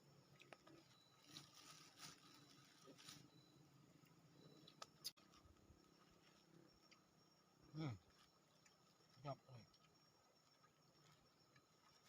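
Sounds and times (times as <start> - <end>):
thin steady high tone: 0.8 - 8.4.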